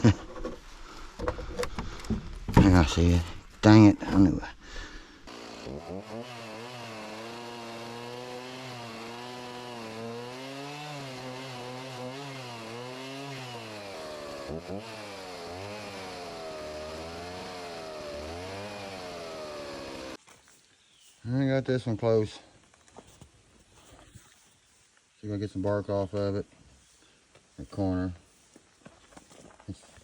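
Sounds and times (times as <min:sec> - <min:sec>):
chainsaw cutting log: 0:01.2 - 0:20.2.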